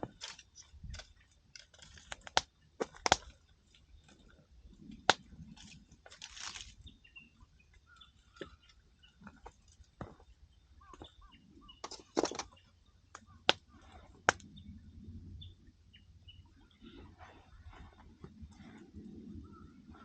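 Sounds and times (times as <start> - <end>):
campfire crackling and popping: 0.0 - 6.8, 13.1 - 14.4.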